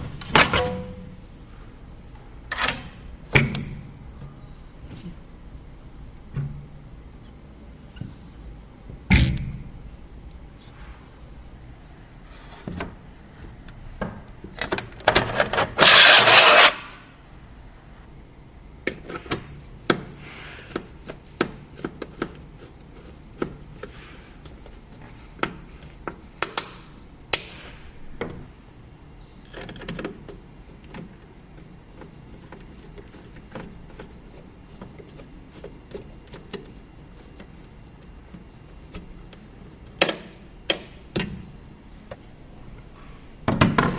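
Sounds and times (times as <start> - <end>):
loud rubbing scrape: 15.6 - 16.9
clicks and taps of parts fitted: 25.4 - 27.6, 39.9 - 41.4.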